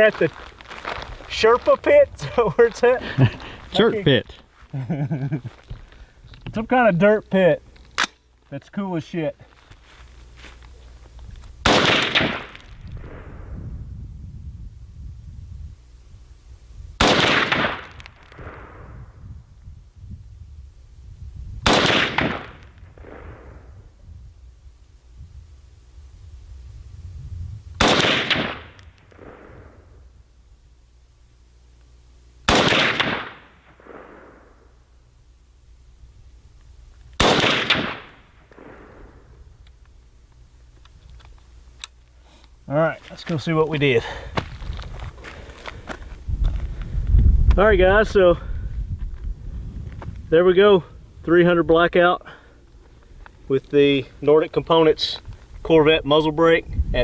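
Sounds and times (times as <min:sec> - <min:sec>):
rifle shots with echo: 0:11.6 - 0:13.5, 0:17.0 - 0:18.9, 0:21.6 - 0:23.7, 0:27.8 - 0:30.0, 0:32.5 - 0:34.7, 0:37.2 - 0:39.3.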